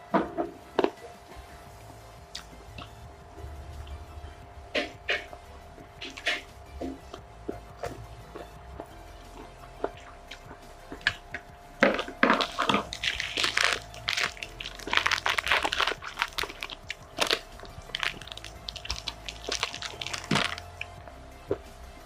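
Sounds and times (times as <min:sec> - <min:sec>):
crunchy chewing: 0:02.3 - 0:03.0, 0:09.4 - 0:21.1.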